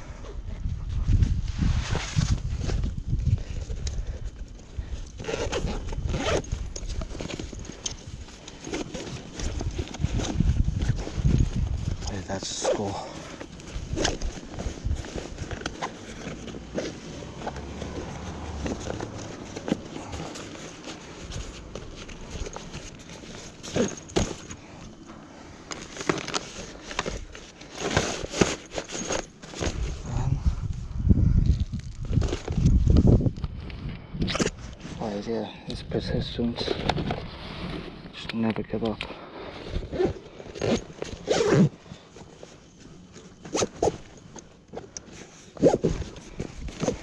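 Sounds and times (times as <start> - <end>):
rustling and crackling of handling: 0.2 - 47.0
zipper being pulled: 5.1 - 24.6, 39.7 - 41.8, 43.2 - 44.2, 45.2 - 47.0.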